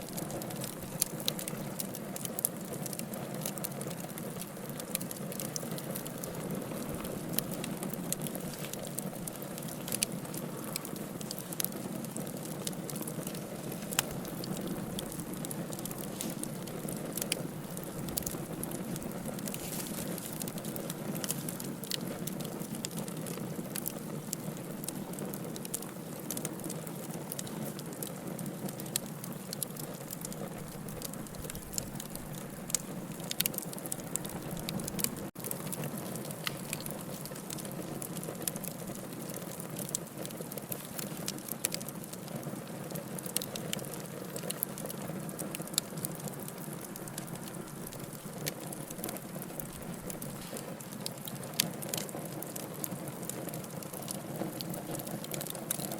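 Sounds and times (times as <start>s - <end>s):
fire hissing: 0.0s - 42.2s, 43.2s - 55.6s
campfire crackling and popping: 0.0s - 55.9s.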